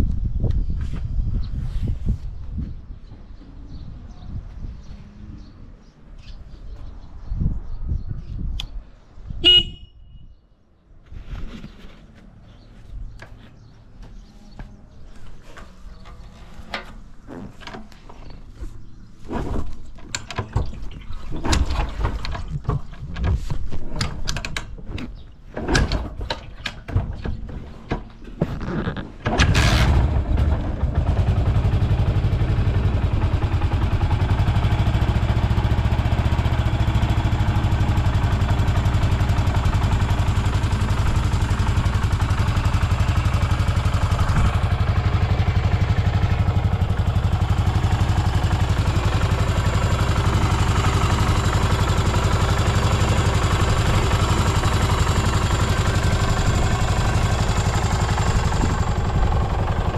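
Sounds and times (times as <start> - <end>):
motorcycle engine starting and idling: 25.6 - 59.9.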